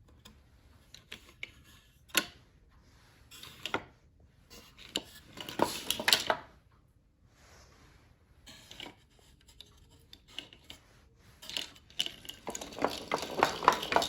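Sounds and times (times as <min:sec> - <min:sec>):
marbles clicking and rattling: 0:11.4 - 0:14.0
marbles rolling on wooden run: 0:11.4 - 0:14.0.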